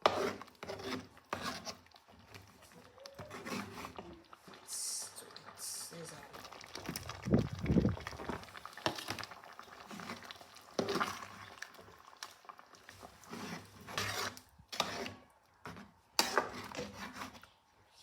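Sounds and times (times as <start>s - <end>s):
spoon clinking and scraping pot: 13.0s - 17.4s.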